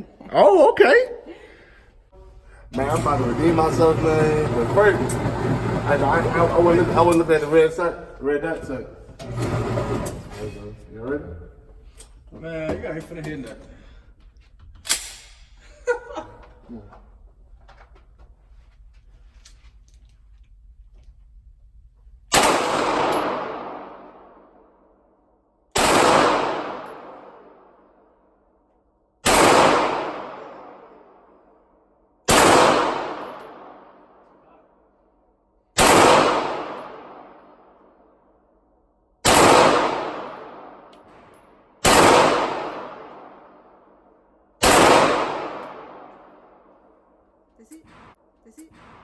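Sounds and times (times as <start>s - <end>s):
echoing gunshots: 22.3s - 24.7s, 25.7s - 27.9s, 29.2s - 31.3s, 32.2s - 34.2s, 35.8s - 37.8s, 39.2s - 47.0s, 47.8s - 49.0s.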